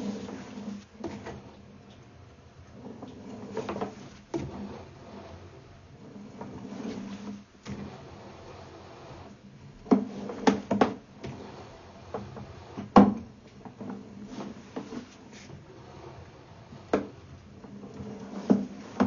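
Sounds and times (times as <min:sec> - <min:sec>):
objects knocking and clunking: 0:09.8 - 0:11.4.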